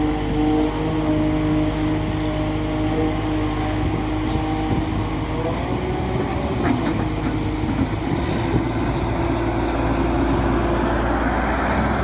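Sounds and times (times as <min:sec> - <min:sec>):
excavator diesel engine running: 0:00.0 - 0:12.0.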